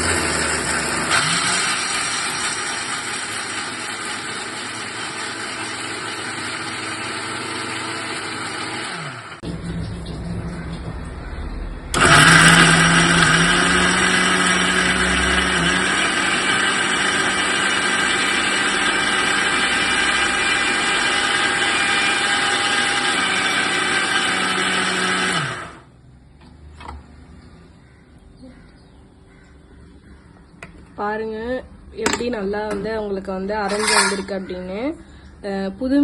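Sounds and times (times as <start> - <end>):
mixer grinder motor whining: 0.0 - 9.4, 11.9 - 25.9, 33.7 - 34.4.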